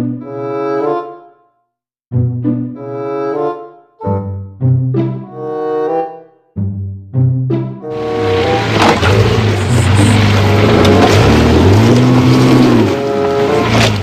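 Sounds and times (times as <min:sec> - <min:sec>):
music: 0:00.0 - 0:14.0
vehicle engine revving: 0:07.9 - 0:14.0.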